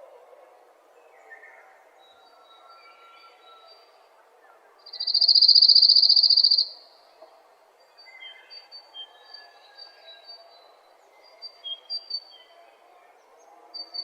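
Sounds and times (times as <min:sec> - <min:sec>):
loud rapid bird trill: 0:04.9 - 0:06.8.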